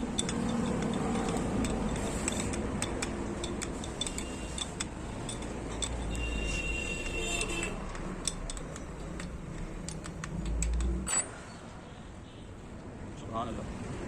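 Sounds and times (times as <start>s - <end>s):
light metallic clicks: 0.0s - 11.3s.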